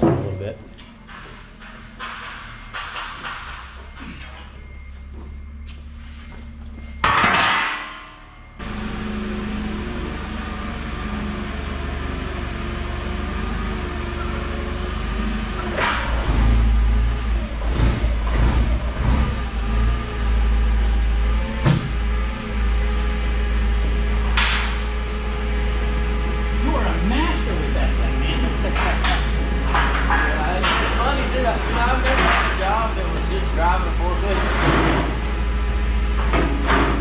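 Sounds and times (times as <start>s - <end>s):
metal clanks: 0.0s - 5.4s, 6.9s - 8.5s, 28.3s - 35.3s
truck engine running: 0.0s - 37.0s.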